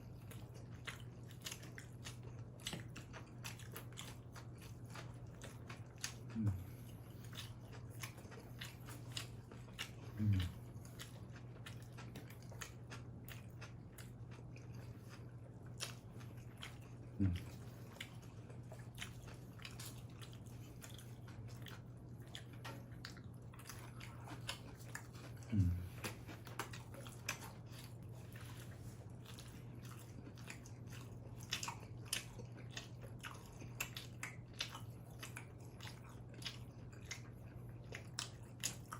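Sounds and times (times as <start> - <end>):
chewing pizza: 0.0 - 38.9
faint steady hum: 0.0 - 38.9.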